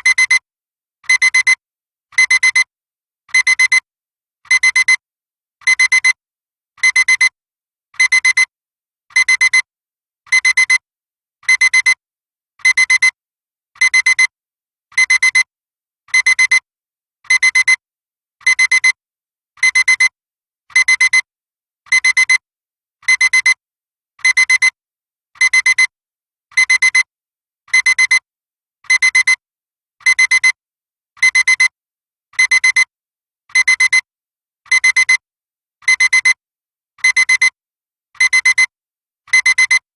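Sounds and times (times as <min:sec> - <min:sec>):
digital alarm clock beeping: 0:30.1 - 0:30.6, 0:31.2 - 0:31.7, 0:32.4 - 0:32.8, 0:34.7 - 0:35.2, 0:35.9 - 0:36.4, 0:37.0 - 0:37.6, 0:38.2 - 0:38.7, 0:39.3 - 0:39.8.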